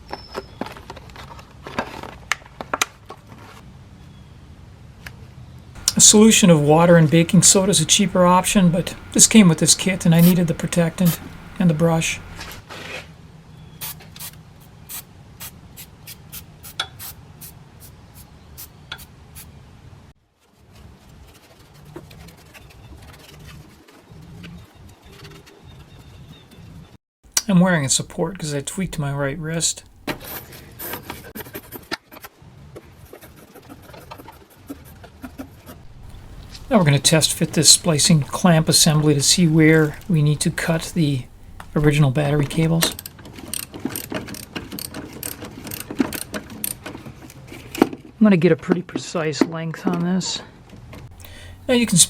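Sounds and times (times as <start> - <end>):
aerosol spray hissing: 5.8 - 12.6.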